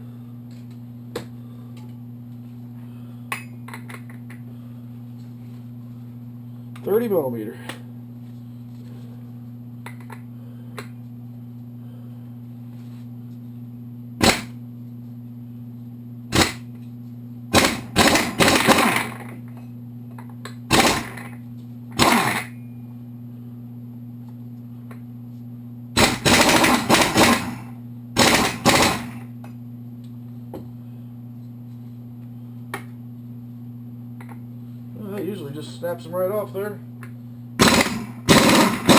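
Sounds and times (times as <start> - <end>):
steady low hum: 0.0 - 38.9
pneumatic impact wrench hammering: 14.2 - 14.6, 16.3 - 16.7, 17.5 - 19.4, 20.7 - 21.4, 22.0 - 22.5, 26.0 - 29.2, 37.6 - 38.9.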